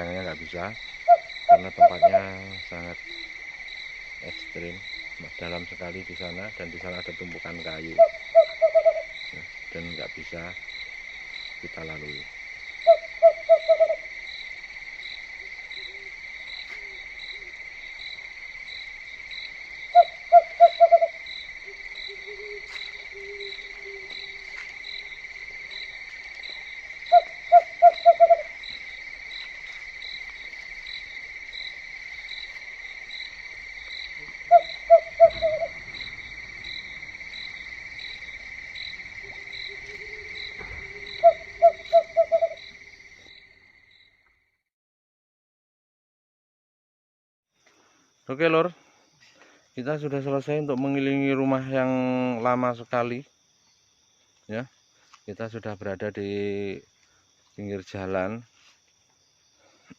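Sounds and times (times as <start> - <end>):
hooting call: 0.0 - 3.5, 4.2 - 6.0, 6.7 - 10.5, 11.6 - 14.2, 19.9 - 26.0, 26.6 - 29.5, 33.6 - 43.0
insect pulsing: 0.0 - 44.2
night insect chorus: 0.0 - 44.6, 47.6 - 59.9.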